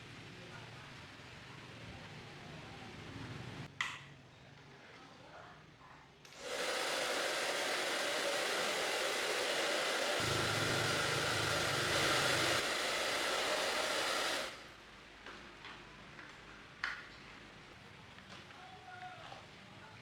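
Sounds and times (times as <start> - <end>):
hair dryer blowing: 6.3 - 14.7.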